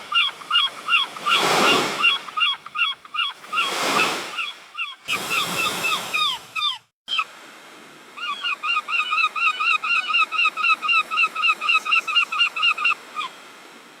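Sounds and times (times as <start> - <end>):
waves washing: 0.0 - 6.7
gulls calling: 0.0 - 6.9.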